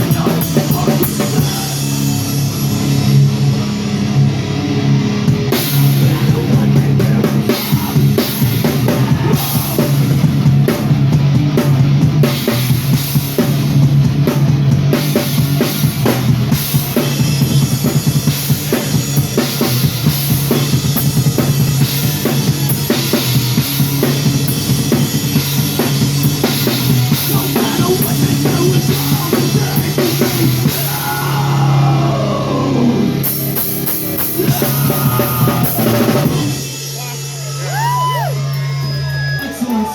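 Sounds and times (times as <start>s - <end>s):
bass line: 0.0s - 39.9s
drum kit: 0.0s - 39.9s
live rock band: 0.0s - 39.9s.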